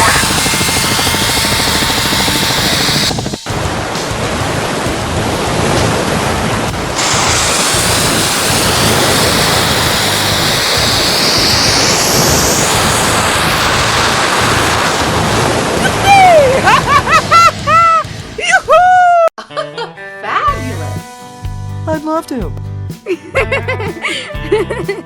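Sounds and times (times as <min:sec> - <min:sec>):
loud rushing noise: 0:00.0 - 0:18.4
rising whoosh: 0:02.5 - 0:18.4.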